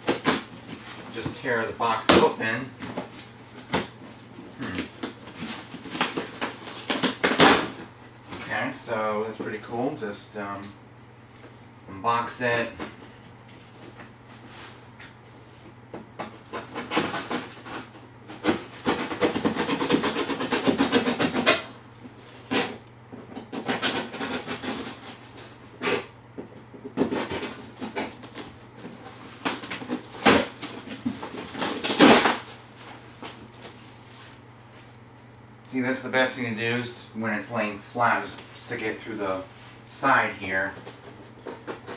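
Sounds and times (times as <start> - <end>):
cardboard rustling and scraping: 0.0 - 8.5, 12.5 - 25.6, 26.4 - 34.9, 40.0 - 41.9
cardboard box tearing: 4.5 - 7.7, 16.5 - 21.5, 29.4 - 32.6.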